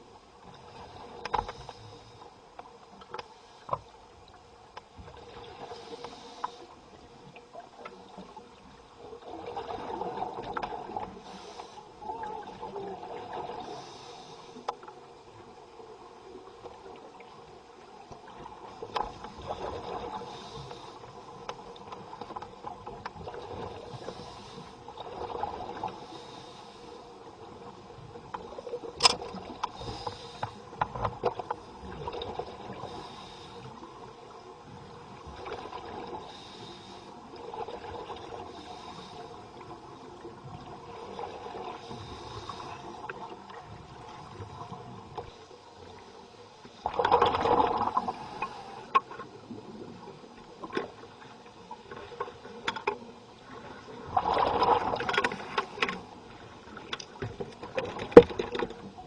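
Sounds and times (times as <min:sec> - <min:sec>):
low underwater hiss: 0:00.0 - 0:59.0
exhaled bubbles underwater: 0:07.3 - 0:14.0, 0:31.1 - 0:33.1, 0:46.8 - 0:51.0, 0:53.4 - 0:55.7.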